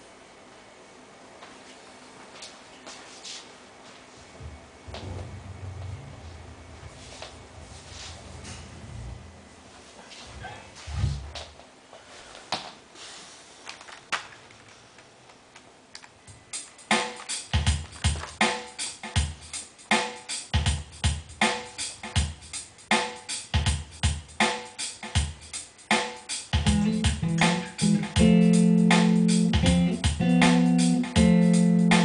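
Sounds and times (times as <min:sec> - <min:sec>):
drum machine beat: 0:16.3 - 0:32.0.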